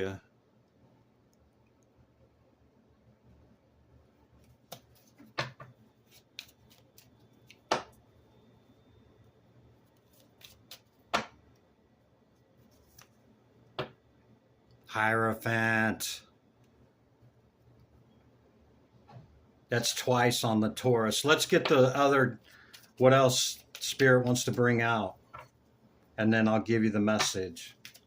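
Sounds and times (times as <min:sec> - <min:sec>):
cards tapping and snapping: 0:04.6 - 0:08.0, 0:27.2 - 0:28.0.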